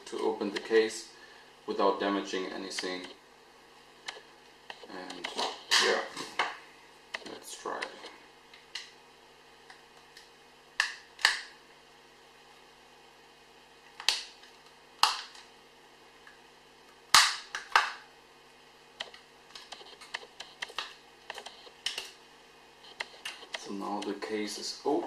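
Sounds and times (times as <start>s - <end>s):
sharp plastic snaps: 4.1s - 8.0s, 9.6s - 11.5s, 14.0s - 15.5s, 17.1s - 18.0s, 19.0s - 22.2s.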